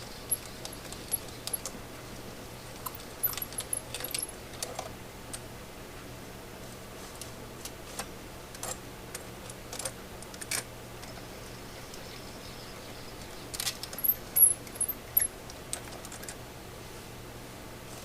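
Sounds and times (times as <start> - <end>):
metal parts clicking: 2.8 - 4.9, 13.5 - 16.4.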